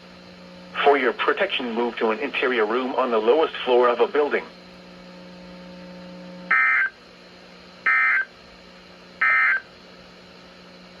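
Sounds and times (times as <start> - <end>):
digital data tone bursts: 6.5 - 6.9, 7.9 - 8.3, 9.2 - 9.6.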